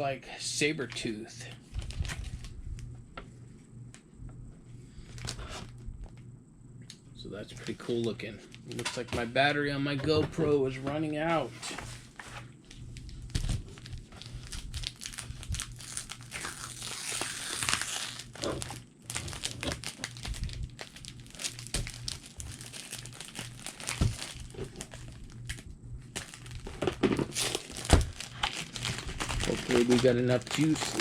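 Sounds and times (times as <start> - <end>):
plastic and paper crinkling: 1.7 - 2.5, 11.5 - 31.0.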